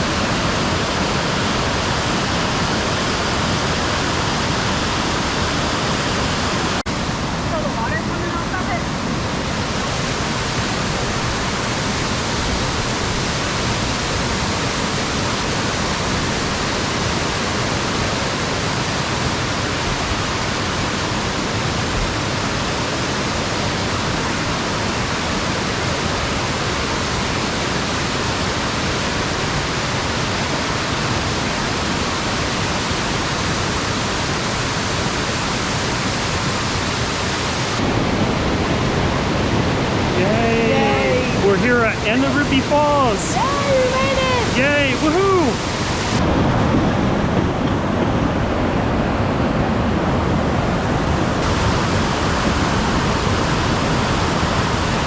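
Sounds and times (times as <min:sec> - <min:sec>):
whitewater rushing over rocks: 0:00.0 - 0:55.0.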